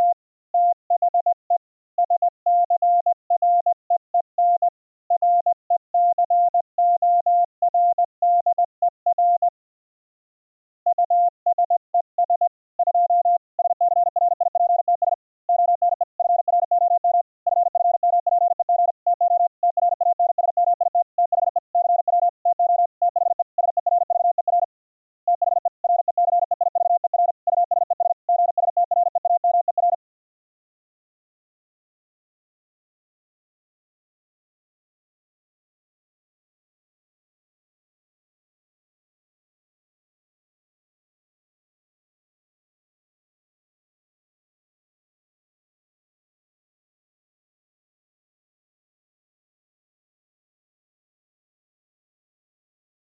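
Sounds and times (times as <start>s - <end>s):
morse code tone: 25.3s - 30.0s.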